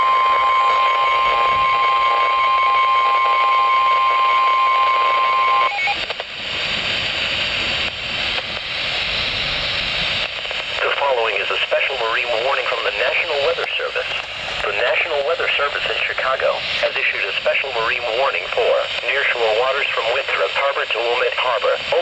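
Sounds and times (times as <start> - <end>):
high warning alarm tone: 0.0 - 6.0
radio static hiss: 0.0 - 22.0.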